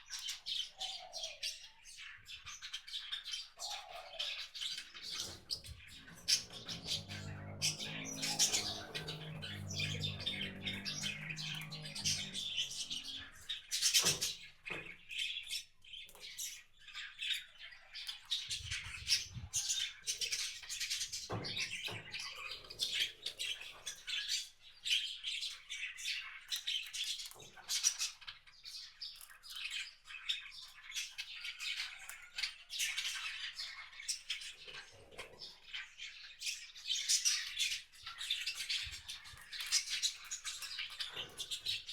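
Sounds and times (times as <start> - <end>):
small birds chirping: 0.0 - 41.9
low hum: 5.6 - 13.6.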